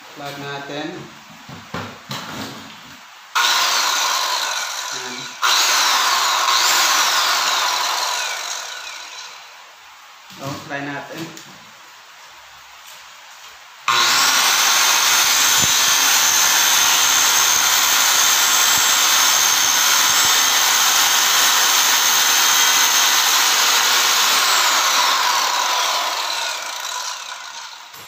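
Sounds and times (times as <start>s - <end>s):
circular saw cutting wood: 3.4s - 9.5s, 13.9s - 28.0s.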